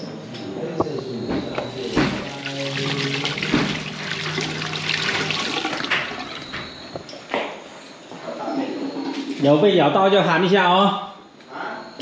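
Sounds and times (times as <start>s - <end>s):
steady low tone: 0.0s - 5.3s
toilet flushing: 1.8s - 7.0s.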